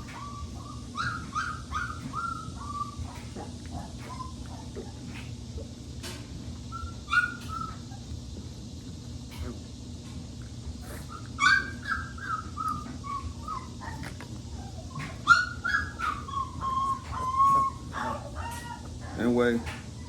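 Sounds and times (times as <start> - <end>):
puppy whining: 0.0 - 8.6, 10.5 - 20.0.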